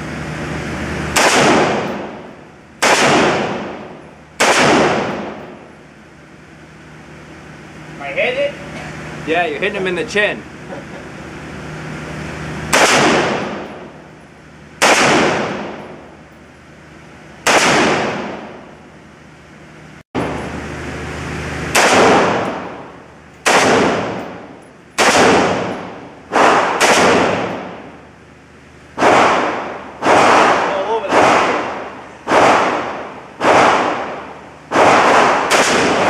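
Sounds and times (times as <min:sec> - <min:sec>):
gunshots with echoing tail: 0:01.1 - 0:05.7, 0:12.7 - 0:14.0, 0:14.8 - 0:16.1, 0:17.4 - 0:18.7, 0:21.7 - 0:28.0, 0:29.0 - 0:36.0.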